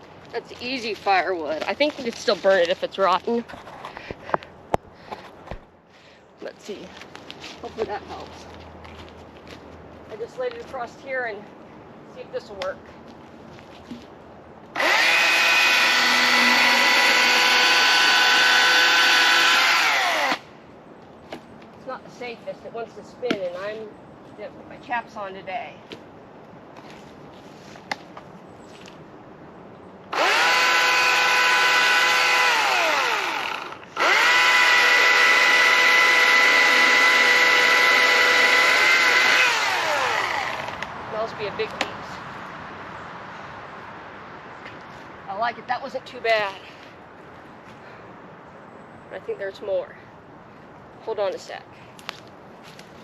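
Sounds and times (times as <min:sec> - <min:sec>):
chainsaw cutting into a log: 0:14.7 - 0:20.4, 0:30.1 - 0:40.9.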